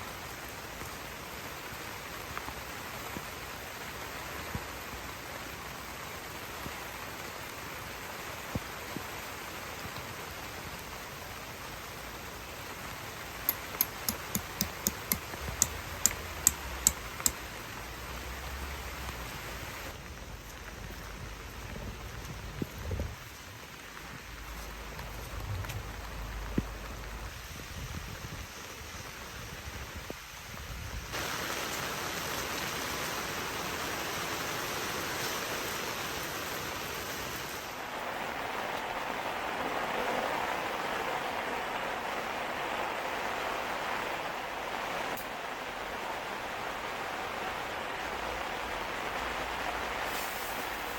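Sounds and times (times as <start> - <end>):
rain hiss: 0.0 - 50.9
sharp irregular taps: 13.5 - 17.4.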